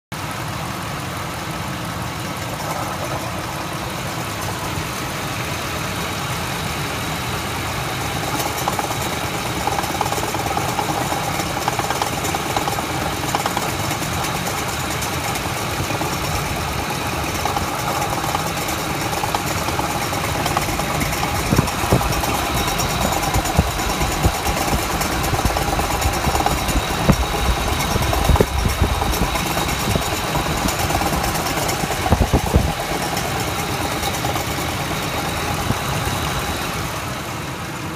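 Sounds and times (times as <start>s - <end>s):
engine idling with rattle: 0.1s - 37.9s
sharp clicks and knocks: 8.2s - 36.7s.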